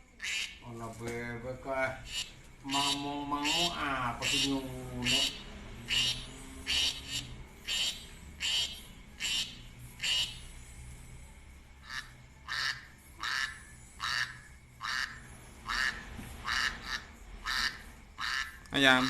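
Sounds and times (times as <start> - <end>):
duck quacking: 0.2 - 0.6, 2.0 - 10.4, 11.8 - 18.6.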